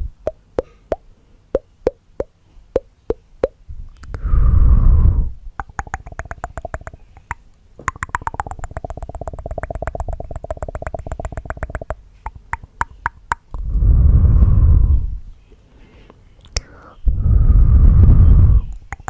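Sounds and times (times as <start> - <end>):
tongue clicks: 0.0 - 4.3, 5.6 - 13.7, 16.4 - 17.0, 18.7 - 19.0.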